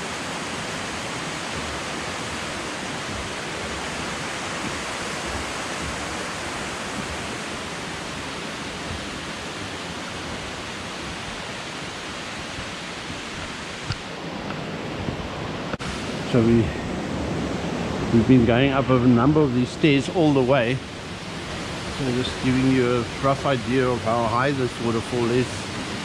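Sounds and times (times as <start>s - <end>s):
waterfall roaring: 0.0s - 26.0s.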